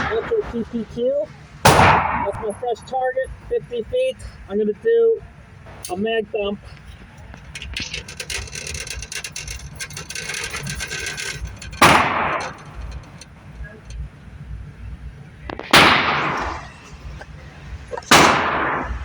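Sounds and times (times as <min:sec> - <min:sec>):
pistol gunshots: 0:01.6 - 0:02.6, 0:15.5 - 0:16.7, 0:18.1 - 0:19.0
small clicks and rustling: 0:06.6 - 0:14.7.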